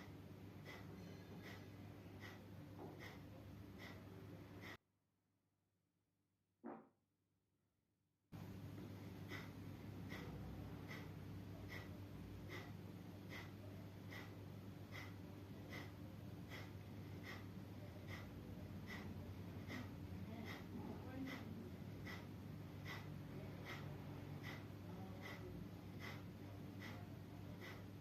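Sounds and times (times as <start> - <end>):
steady low hum: 0.0 - 4.8, 8.4 - 28.0
person breathing out through nose: 18.9 - 19.1, 22.0 - 23.8.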